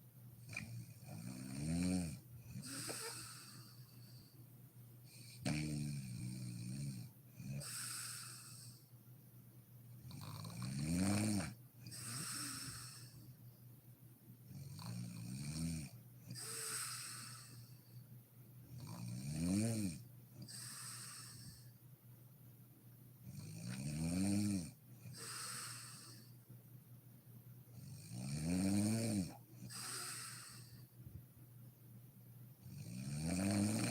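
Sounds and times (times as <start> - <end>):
woman snoring: 0.5 - 3.8, 5.2 - 8.8, 10.1 - 13.2, 14.6 - 17.7, 18.8 - 21.7, 23.3 - 26.3, 27.8 - 30.8, 32.7 - 33.9.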